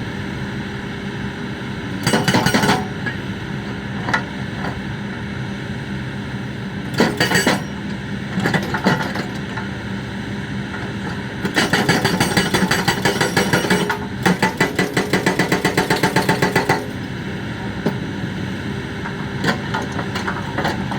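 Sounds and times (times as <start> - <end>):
diesel engine running: 0.2 - 20.9
hydraulic breaker hammering: 6.9 - 9.4, 10.8 - 17.2.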